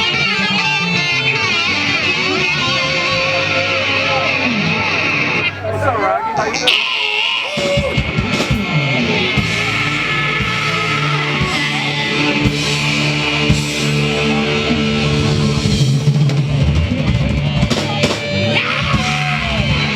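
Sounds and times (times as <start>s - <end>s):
bass guitar: 0.0s - 19.9s
electric guitar: 0.0s - 19.9s
drum kit: 7.4s - 19.9s.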